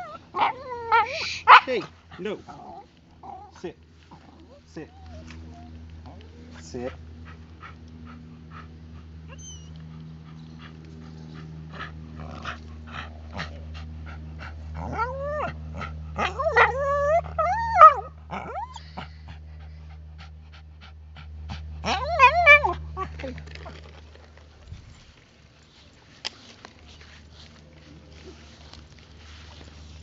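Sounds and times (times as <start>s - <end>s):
dog whining and yelping: 0.0s - 1.6s, 4.4s - 5.8s, 9.3s - 10.6s, 14.8s - 18.9s, 21.8s - 23.7s.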